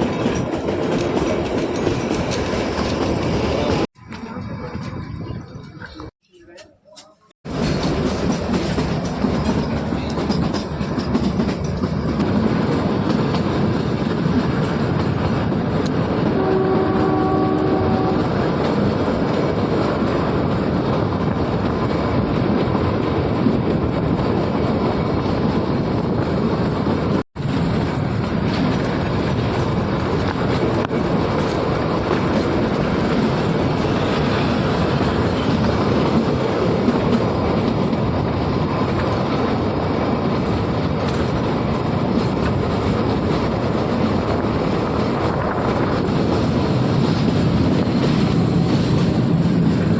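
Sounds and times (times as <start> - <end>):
train wheels clattering on rails: 0.0 - 6.1, 7.0 - 49.9
train horn: 16.2 - 18.3.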